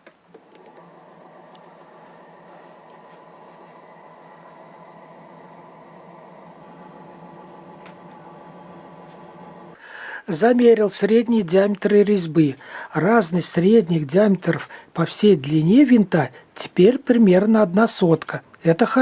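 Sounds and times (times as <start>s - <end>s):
lathe machine hum: 0.0s - 9.8s
thin high whine: 0.0s - 9.8s.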